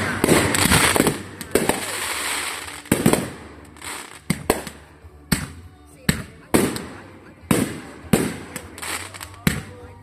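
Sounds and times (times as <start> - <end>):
fireworks bangs: 0.0 - 5.5
fireworks crackling: 0.0 - 5.6, 6.4 - 10.0.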